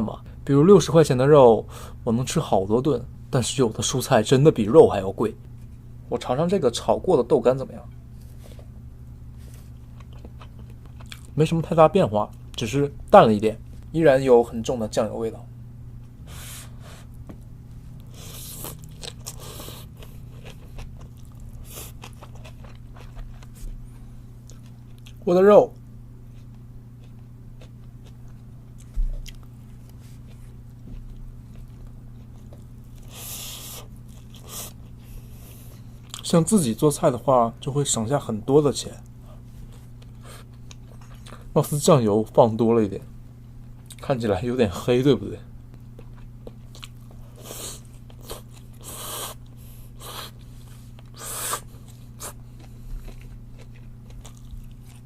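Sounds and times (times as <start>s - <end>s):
steady low hum: 0.0s - 55.0s
person chewing food: 8.3s - 11.4s, 18.0s - 25.2s, 26.2s - 36.2s, 39.1s - 41.5s, 45.7s - 55.0s.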